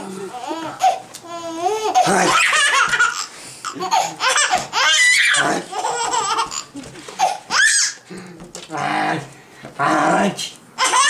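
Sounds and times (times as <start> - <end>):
baby laughing: 0.3 - 8.0, 10.8 - 11.0.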